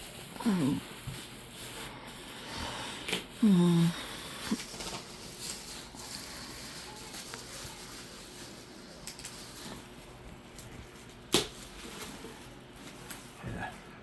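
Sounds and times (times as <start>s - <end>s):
plastic packaging crinkling: 0.0s - 13.4s
bubble wrap snap: 10.5s - 11.8s.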